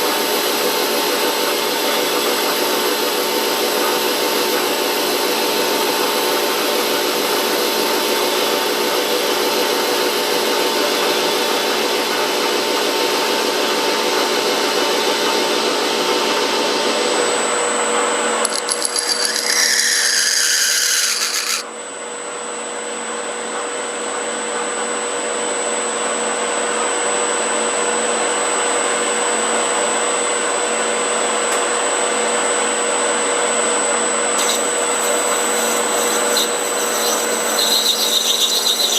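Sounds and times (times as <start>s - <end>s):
metal lathe whine: 18.4s - 21.6s, 34.4s - 38.9s
harsh scraping with squeal: 18.5s - 21.6s, 34.4s - 38.9s
metal cutting noise: 18.5s - 21.6s, 34.4s - 38.9s.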